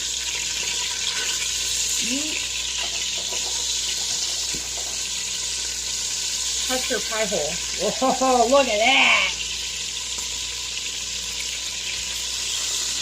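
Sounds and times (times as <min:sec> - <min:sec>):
beef sizzling in a pot: 0:00.0 - 0:13.0.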